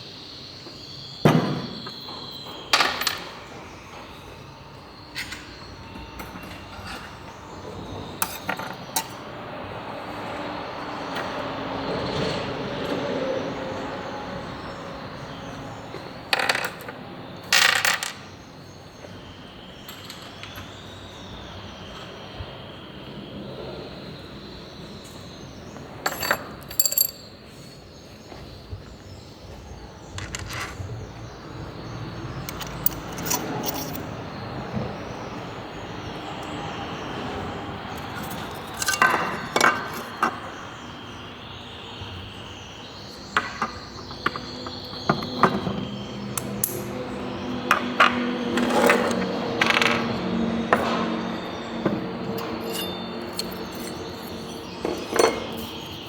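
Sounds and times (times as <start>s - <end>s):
metal engine parts clinking: 26.0s - 27.4s, 32.3s - 34.2s, 37.9s - 40.4s, 46.4s - 47.0s, 48.5s - 56.0s.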